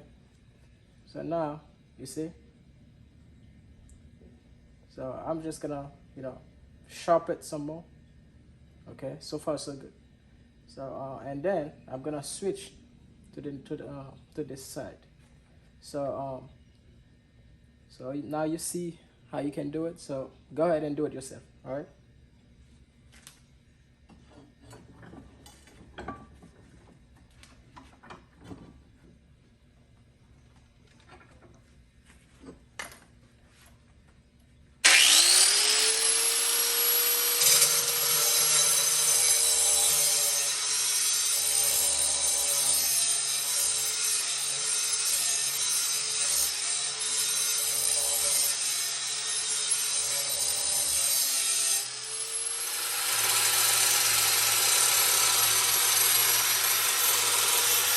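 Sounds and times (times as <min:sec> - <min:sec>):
angle grinder grinding steel: 0:34.8 - 0:57.9.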